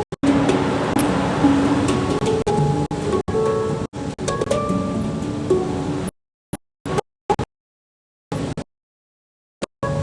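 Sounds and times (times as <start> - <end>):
handpan notes ringing: 0.2 - 6.1.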